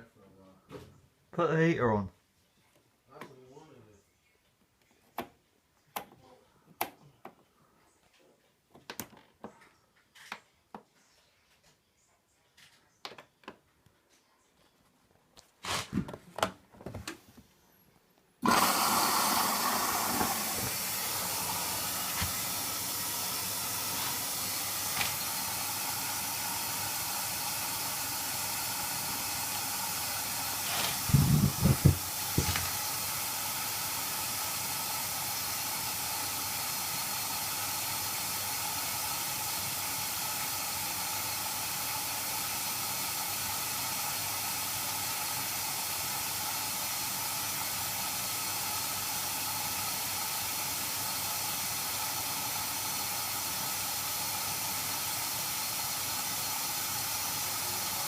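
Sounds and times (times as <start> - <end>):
water filling washing machine: 18.4 - 58.0.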